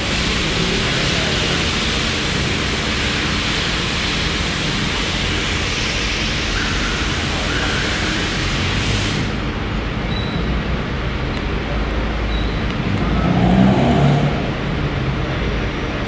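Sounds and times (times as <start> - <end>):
welding machine hissing: 0.0 - 9.5.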